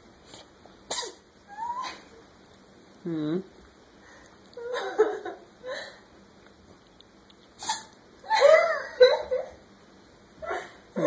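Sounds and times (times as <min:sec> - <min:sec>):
cat sneezing: 0:00.9 - 0:01.3, 0:07.6 - 0:08.0.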